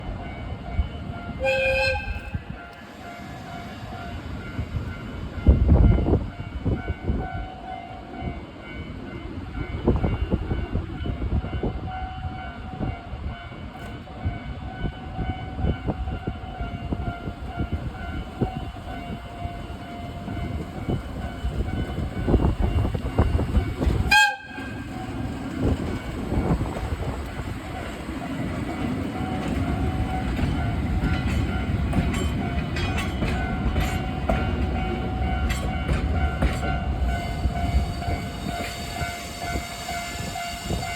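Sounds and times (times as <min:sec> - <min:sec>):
train wheel rumble: 0:00.8 - 0:07.6, 0:08.2 - 0:40.9
train horn: 0:01.3 - 0:02.8, 0:23.8 - 0:25.2
clacks over rail joints: 0:21.6 - 0:37.0.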